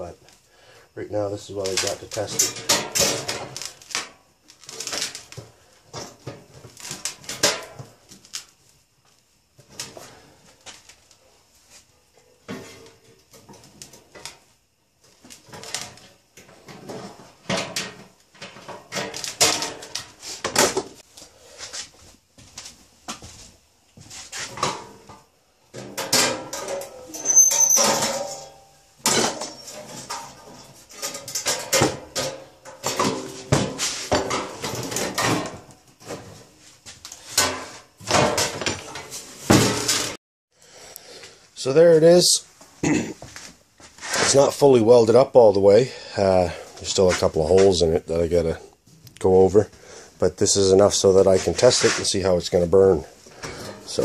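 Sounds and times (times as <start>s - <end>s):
metal stove clanking and scraping: 1.8s - 3.7s, 15.5s - 20.8s, 24.4s - 36.4s, 37.2s - 40.2s, 53.3s - 54.0s
brief squeak: 27.2s - 28.0s.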